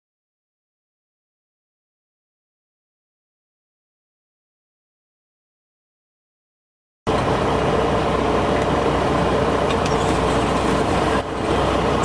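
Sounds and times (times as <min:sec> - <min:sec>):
loud diesel truck exhaust: 0:07.1 - 0:12.0.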